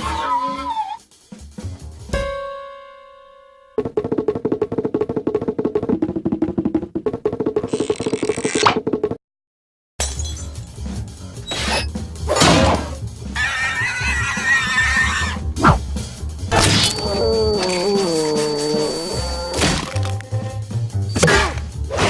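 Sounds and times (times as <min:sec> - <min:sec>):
cartoon hits and crashes: 0:11.5 - 0:13.0, 0:16.5 - 0:20.2, 0:21.1 - 0:22.0
short rising whistle: 0:16.5 - 0:19.6
held tone: 0:16.5 - 0:20.2.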